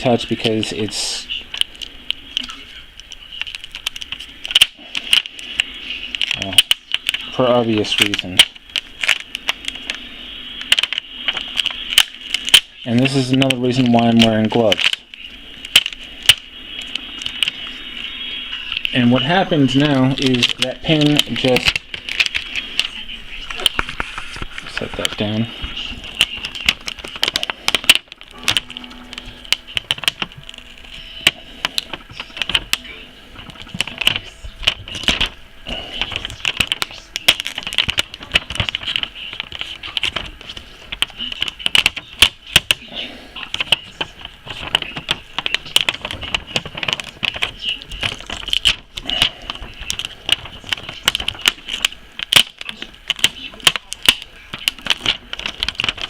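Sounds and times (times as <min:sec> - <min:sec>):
adhesive tape peeling: 0:33.4 - 0:56.0.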